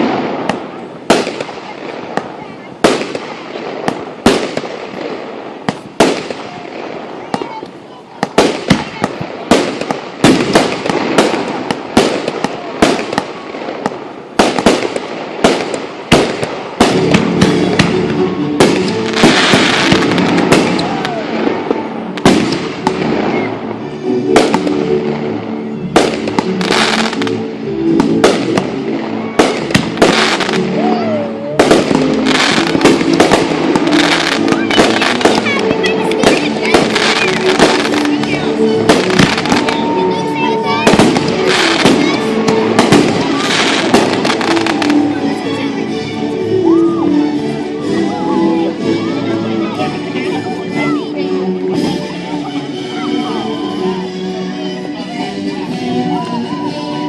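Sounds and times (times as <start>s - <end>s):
fireworks bangs and crackles: 0.0s - 54.0s
music playing: 0.0s - 57.0s.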